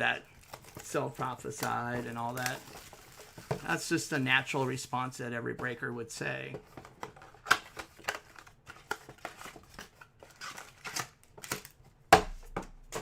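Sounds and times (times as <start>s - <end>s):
trading cards rustling and clicking: 0.1s - 4.1s, 5.4s - 11.8s.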